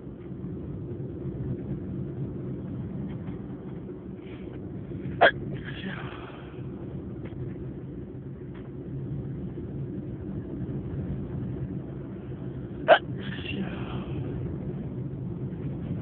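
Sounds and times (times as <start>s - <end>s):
low rumble: 0.0s - 16.0s
stifled sneeze: 12.9s - 13.6s.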